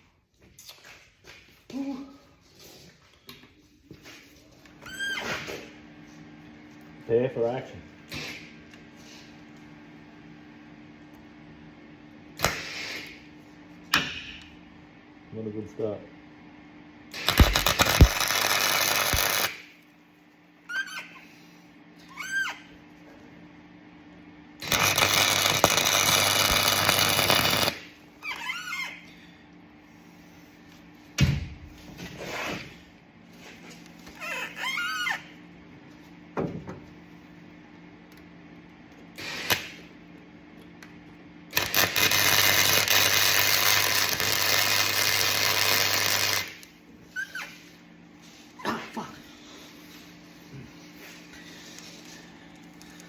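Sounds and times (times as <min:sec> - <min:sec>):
low mains hum: 0:00.0 - 0:53.0
welder buzzing crackle: 0:12.4 - 0:13.2, 0:17.1 - 0:19.7, 0:24.6 - 0:27.9, 0:39.2 - 0:39.8, 0:41.5 - 0:46.7
short squeaks: 0:28.2 - 0:29.2, 0:34.2 - 0:35.3.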